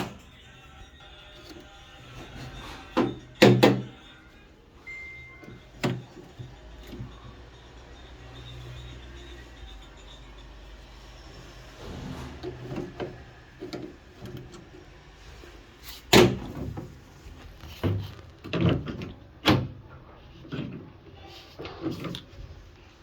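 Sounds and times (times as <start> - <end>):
knocks and clacks on washing machine: 3.0 - 3.9.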